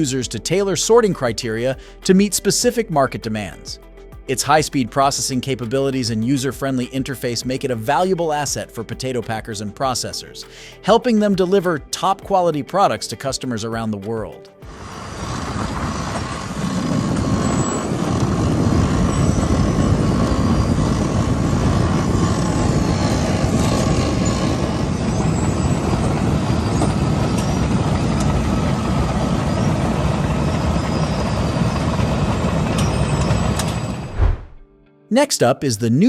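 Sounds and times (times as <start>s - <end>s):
heavy machinery rumbling: 14.6s - 34.6s.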